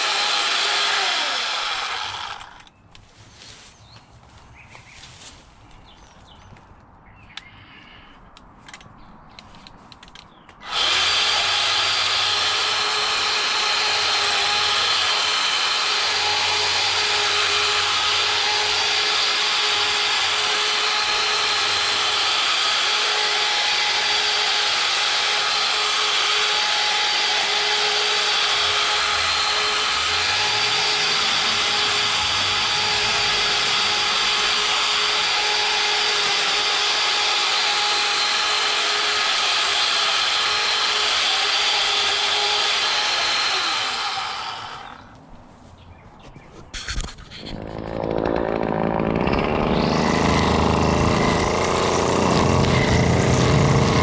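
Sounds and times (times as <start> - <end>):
string trimmer whining: 0.0 - 2.7, 10.6 - 45.2, 47.4 - 54.0
faint footsteps: 2.9 - 7.5, 45.1 - 47.5.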